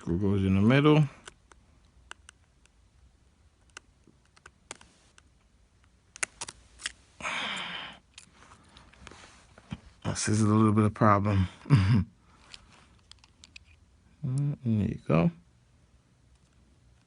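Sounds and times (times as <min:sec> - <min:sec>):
breathy rush of noise: 0:07.1 - 0:09.6.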